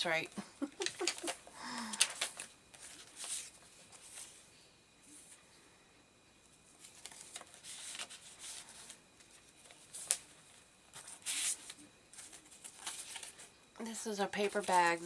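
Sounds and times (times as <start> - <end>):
paper rustling: 0.8 - 4.5, 6.7 - 13.5, 14.3 - 15.0.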